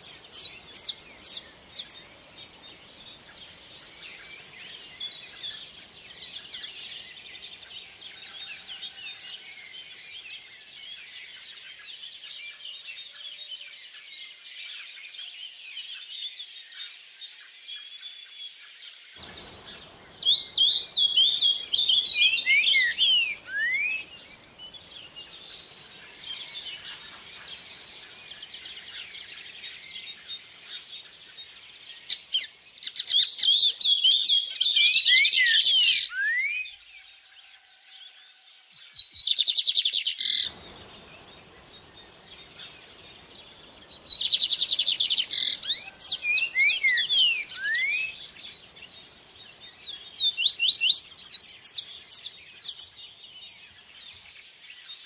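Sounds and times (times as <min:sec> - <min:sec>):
songbirds chirping and whistling: 0:00.0 - 0:55.0
faint stream water rushing: 0:19.2 - 0:32.4, 0:40.3 - 0:53.7.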